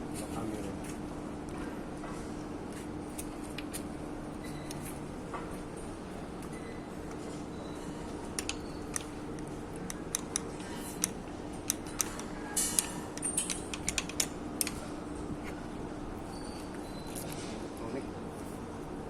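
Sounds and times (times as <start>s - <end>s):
metallic tool clicks and taps: 8.4s - 14.8s.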